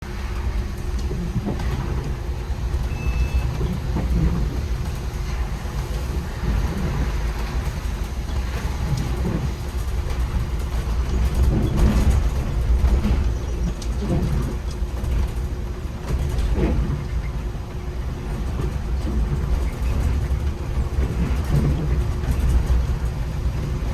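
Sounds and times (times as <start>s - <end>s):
bus driving in rain: 0.0s - 23.9s
short beep: 2.9s - 3.6s.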